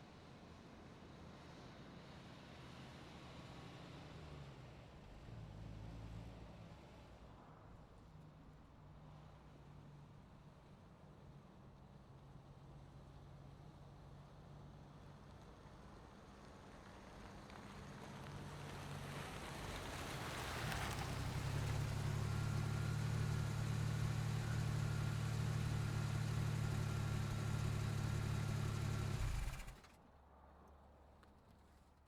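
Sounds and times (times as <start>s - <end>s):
car engine: 20.5s - 30.0s.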